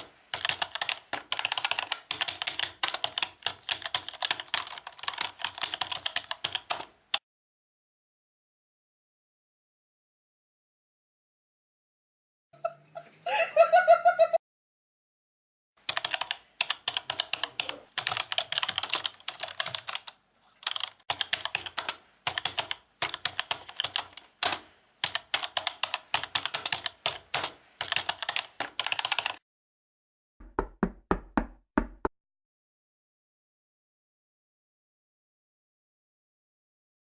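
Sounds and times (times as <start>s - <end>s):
typing on computer keyboard: 0.0s - 7.2s, 15.8s - 29.4s.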